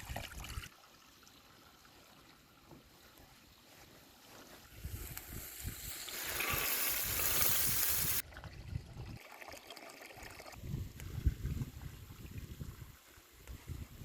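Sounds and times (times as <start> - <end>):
liquid pouring: 5.0 - 12.9.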